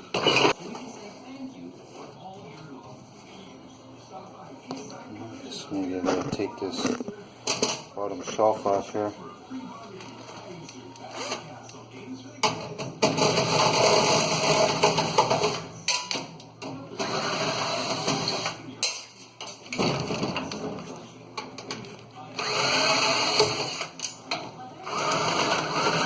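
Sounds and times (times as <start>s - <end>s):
power drill bursts: 22.4s - 23.9s.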